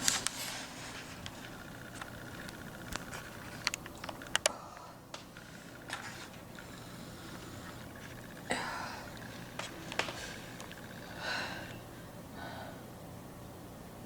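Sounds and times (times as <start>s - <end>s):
faint low hum: 0.0s - 14.0s
faint clicks and handling noises: 1.1s - 10.9s.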